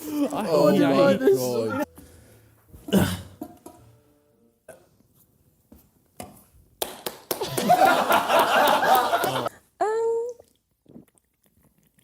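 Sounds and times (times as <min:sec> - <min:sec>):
person burping: 0:02.9 - 0:03.4.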